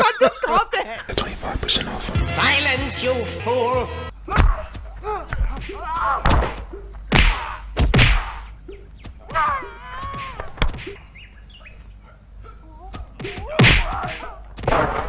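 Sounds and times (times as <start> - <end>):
high wavering fighting yell: 3.8 - 6.5, 9.2 - 10.6, 12.4 - 14.5
punch and kick hits: 4.3 - 8.5, 13.2 - 15.0.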